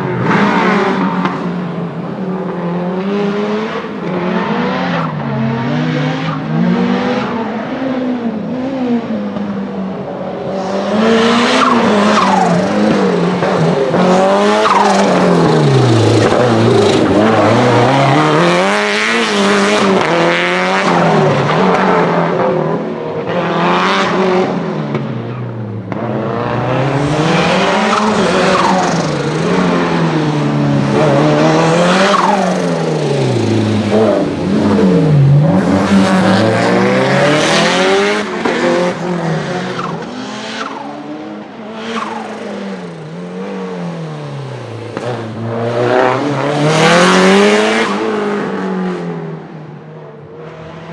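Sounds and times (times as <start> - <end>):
turbocharged car engine revving: 10.5 - 49.0.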